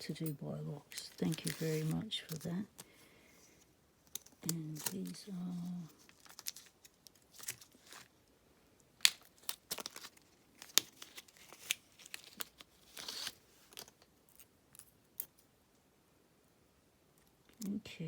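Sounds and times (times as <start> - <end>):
packaging crinkling and rustling: 0.9 - 2.9, 4.1 - 8.2, 9.0 - 14.9.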